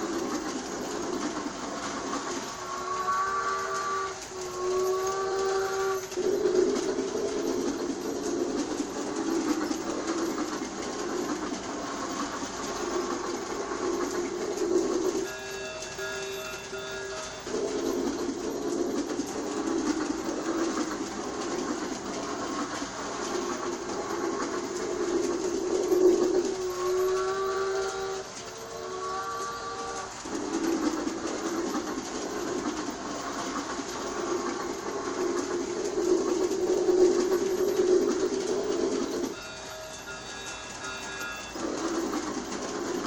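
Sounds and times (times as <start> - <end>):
toy train rattling on track: 0.0 - 43.0
toy train whistle: 2.0 - 8.0, 12.0 - 19.6, 23.4 - 31.8, 36.8 - 43.0.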